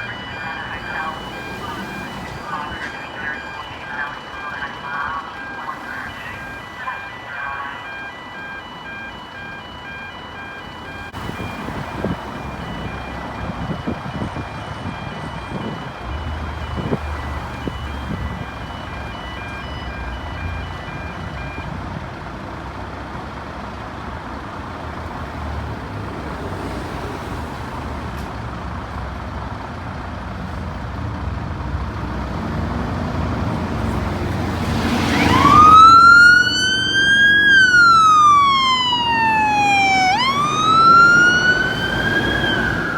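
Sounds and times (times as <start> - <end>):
siren wailing: 0.0 - 21.6, 33.8 - 42.9
diesel engine rumbling: 0.0 - 42.9.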